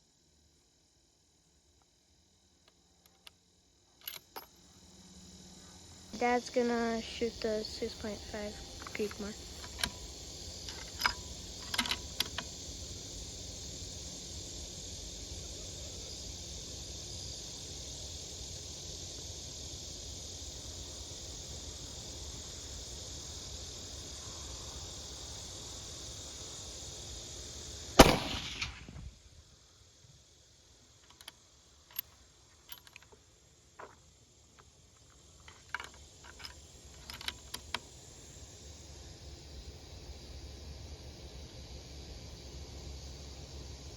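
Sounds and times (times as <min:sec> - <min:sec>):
crickets chirring: 0:00.0 - 0:43.9
rifle bolt clicks and clatters: 0:04.0 - 0:04.5, 0:08.8 - 0:10.0, 0:10.6 - 0:12.5, 0:31.0 - 0:33.2, 0:35.0 - 0:37.8.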